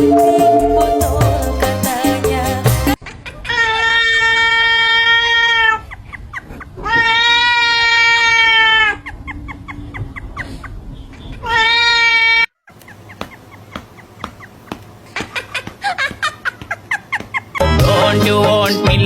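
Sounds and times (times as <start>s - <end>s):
cat meowing: 6.8s - 9.0s, 11.4s - 12.5s.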